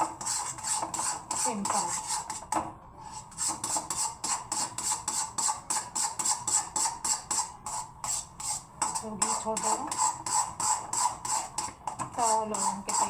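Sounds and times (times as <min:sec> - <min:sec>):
spoon scraping a pan: 0:00.0 - 0:13.0.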